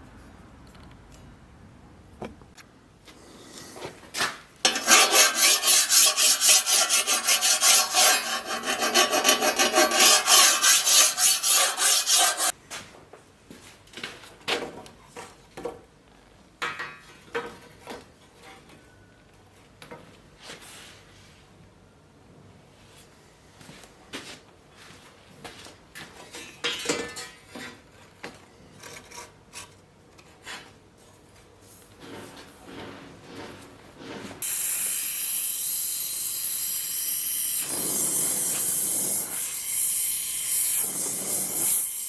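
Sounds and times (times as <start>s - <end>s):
abrasive scraping steel blade: 4.6s - 12.6s.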